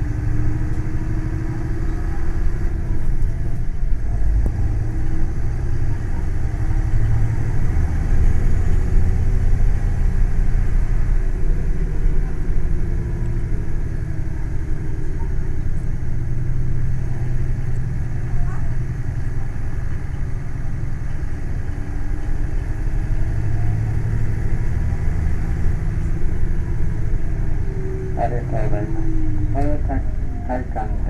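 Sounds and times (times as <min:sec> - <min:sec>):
bus engine rumble: 0:00.0 - 0:31.0
faint rising whine: 0:25.5 - 0:31.0.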